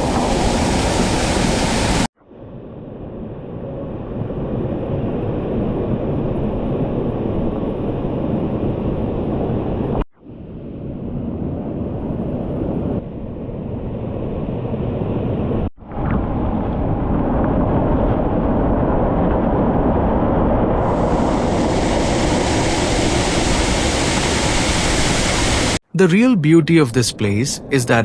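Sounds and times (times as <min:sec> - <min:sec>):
waterfall rushing: 0:00.0 - 0:02.1, 0:20.8 - 0:25.8.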